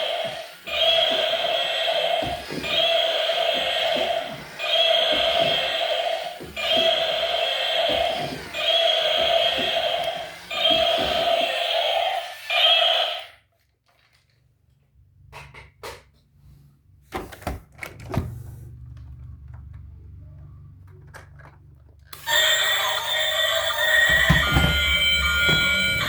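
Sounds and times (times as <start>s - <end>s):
electronic toy sound: 0.0s - 13.4s, 22.1s - 26.0s.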